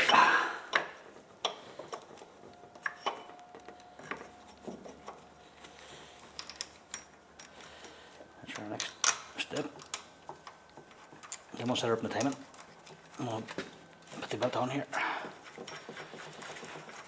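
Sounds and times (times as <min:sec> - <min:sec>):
metal tools clicking and knocking: 0:06.3 - 0:07.6, 0:08.5 - 0:13.1.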